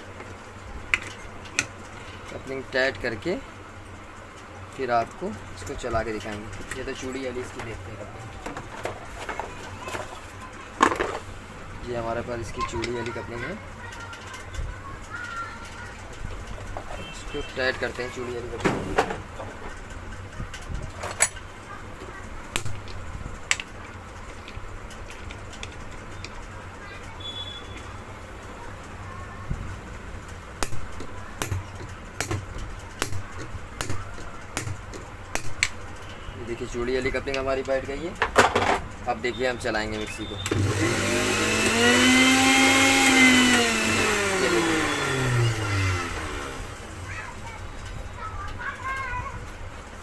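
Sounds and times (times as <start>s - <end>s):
mixer grinder motor whining: 40.3s - 46.9s.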